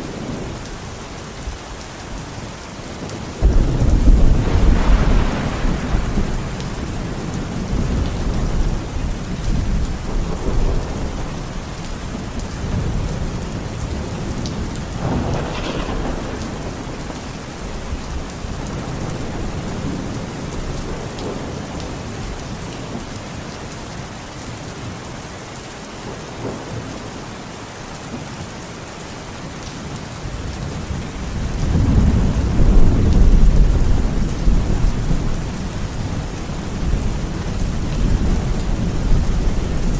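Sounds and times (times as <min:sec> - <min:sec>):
steady rain: 0:00.0 - 0:39.9
rolling thunder: 0:03.0 - 0:22.4, 0:30.4 - 0:39.9.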